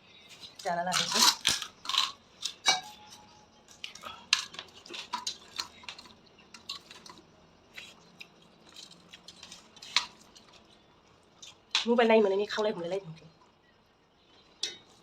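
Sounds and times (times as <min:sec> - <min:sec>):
metal utensils clinking on dishes: 0:00.6 - 0:07.2, 0:14.6 - 0:14.9.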